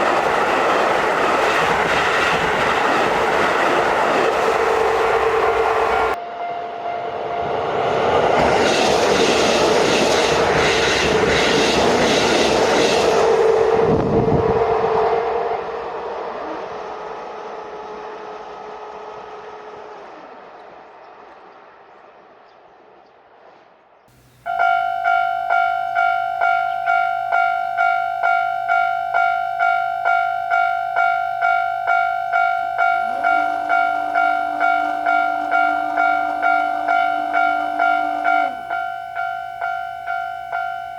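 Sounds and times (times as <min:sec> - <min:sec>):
train wheels clattering over rail joints: 0:00.0 - 0:06.2
level crossing warning bell: 0:01.4 - 0:07.8, 0:24.1 - 0:40.9
low tone: 0:24.2 - 0:40.9.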